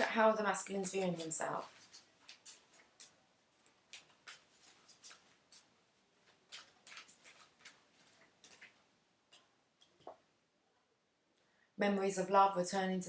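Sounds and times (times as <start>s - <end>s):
cards ticking and rustling: 0.0s - 10.1s.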